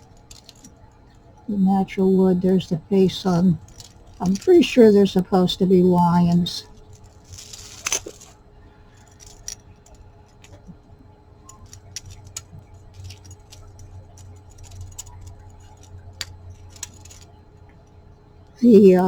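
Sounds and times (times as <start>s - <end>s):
steady low hum: 0.0s - 19.0s
beads clicking together: 3.6s - 4.8s.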